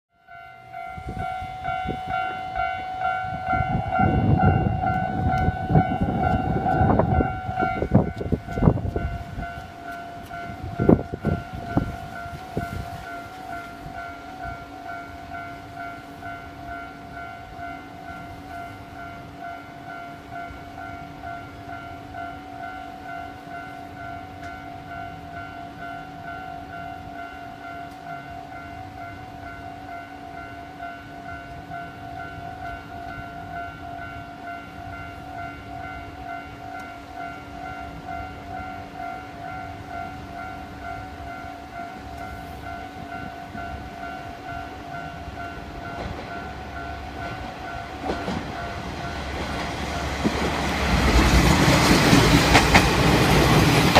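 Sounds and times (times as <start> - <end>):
level-crossing warning bell: 0.1 - 53.9
train rumbling: 0.3 - 53.9
wheels clacking over rail joints: 45.3 - 53.9.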